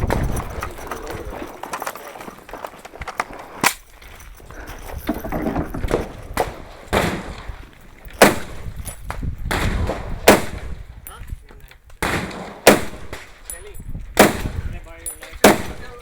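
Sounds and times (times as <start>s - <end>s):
gunshots with echo: 6.3s - 8.8s, 9.5s - 10.8s, 12.0s - 13.4s, 14.2s - 14.7s, 15.4s - 16.0s.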